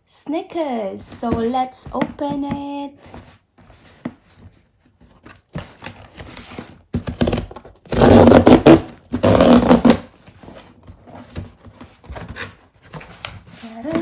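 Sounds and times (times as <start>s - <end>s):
packaging rustling and tearing: 4.2s - 14.0s
loud ripping of packaging: 5.5s - 10.2s.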